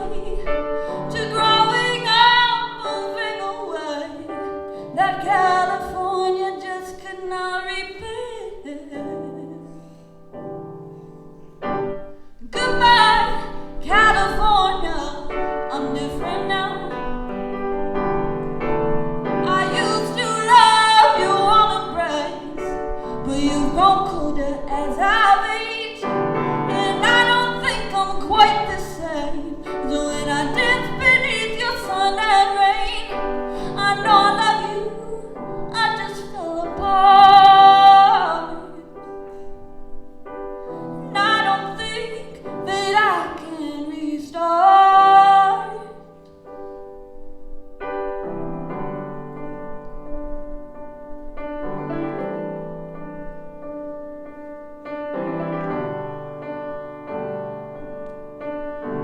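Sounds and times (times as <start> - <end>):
woman singing a ballad: 0.0 - 10.2, 12.4 - 17.8, 19.3 - 39.4, 40.6 - 46.3
piano accompaniment: 0.0 - 59.0.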